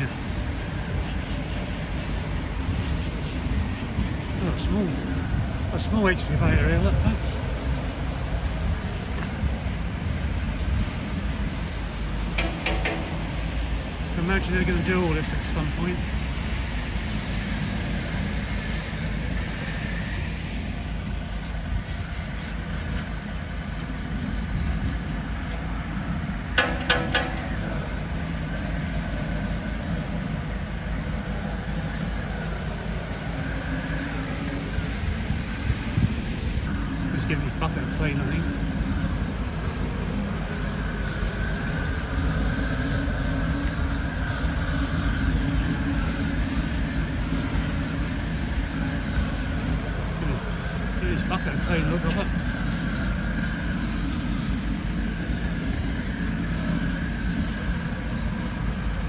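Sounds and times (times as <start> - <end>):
diesel engine running at low revs: 0.0 - 59.0
faint wavering whine: 0.0 - 59.0
sharp ringing metal clanks: 12.4 - 14.0, 26.6 - 27.9.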